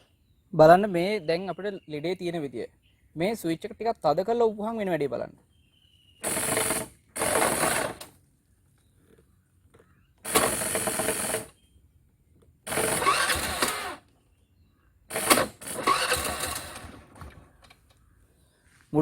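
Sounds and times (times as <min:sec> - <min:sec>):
scooter starter motor cranking: 0:06.2 - 0:08.2, 0:10.2 - 0:11.6, 0:12.6 - 0:14.1, 0:15.1 - 0:18.0.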